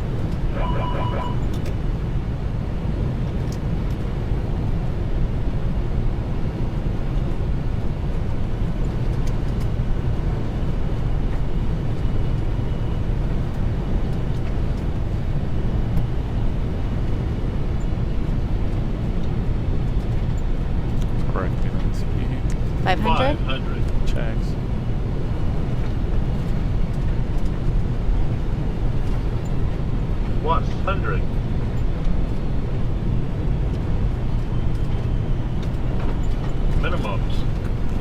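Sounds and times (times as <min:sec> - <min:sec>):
jet engine rumble: 0:00.0 - 0:38.0
brief electronic tone: 0:00.5 - 0:01.6.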